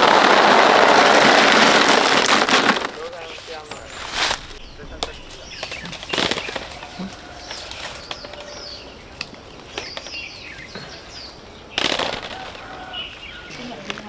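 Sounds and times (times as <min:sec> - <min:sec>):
small birds chirping: 0:03.0 - 0:14.0.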